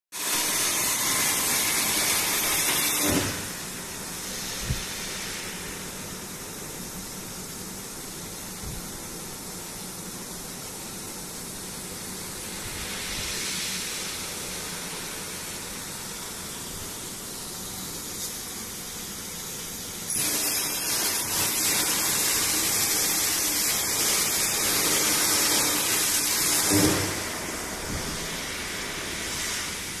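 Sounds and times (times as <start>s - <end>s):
plasma torch hissing: 0.2s - 30.0s.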